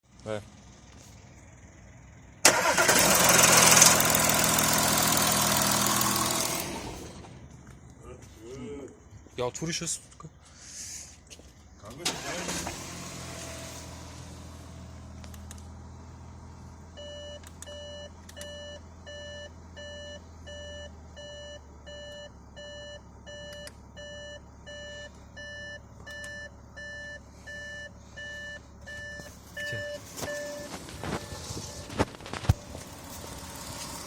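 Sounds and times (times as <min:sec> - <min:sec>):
car engine idling: 0:00.1 - 0:09.3, 0:11.5 - 0:34.0
dashboard warning chime beeping: 0:17.0 - 0:32.1.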